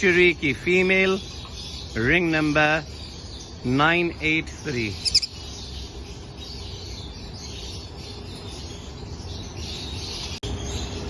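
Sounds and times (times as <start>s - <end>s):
birds twittering: 0.0s - 11.0s
sharp high bird chirps: 4.6s - 11.0s.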